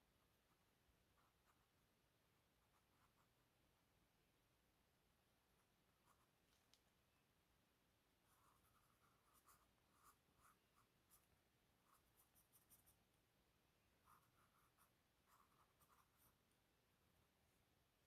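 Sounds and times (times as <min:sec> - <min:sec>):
pencil scratching on paper: 0:08.3 - 0:13.0, 0:14.0 - 0:16.4.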